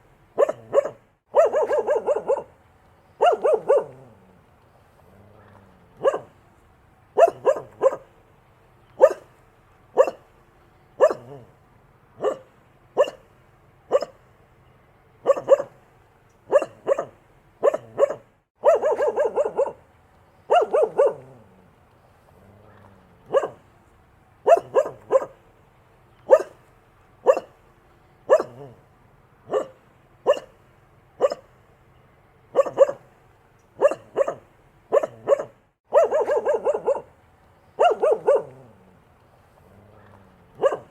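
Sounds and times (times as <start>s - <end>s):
dog barking: 0.4s - 2.6s, 3.2s - 4.2s, 5.4s - 6.4s, 7.2s - 8.1s, 9.0s - 9.3s, 10.0s - 10.3s, 11.0s - 11.5s, 12.2s - 13.3s, 13.9s - 14.2s, 15.2s - 15.8s, 16.5s - 19.8s, 20.5s - 21.4s, 22.6s - 23.6s, 24.4s - 25.4s, 26.3s - 26.6s, 27.2s - 27.6s, 28.3s - 28.8s, 29.5s - 30.6s, 31.2s - 31.5s, 32.5s - 33.1s, 33.8s - 37.1s, 37.8s - 38.7s, 40.0s - 40.9s.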